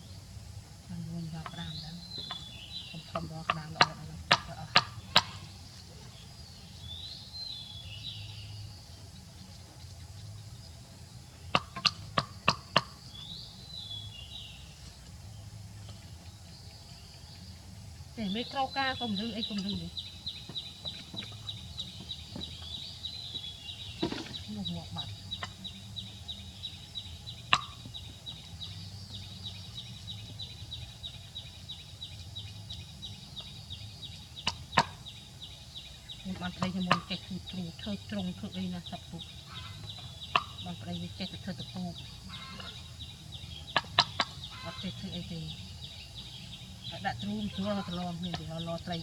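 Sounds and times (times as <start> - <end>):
low steady background hum: 0.0 - 49.0
high chirping call: 18.2 - 49.0.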